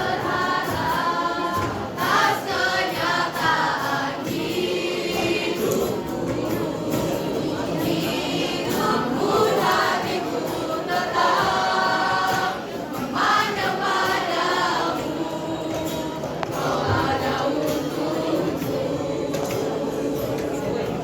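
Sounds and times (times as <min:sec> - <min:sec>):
choir singing: 0:00.0 - 0:21.0.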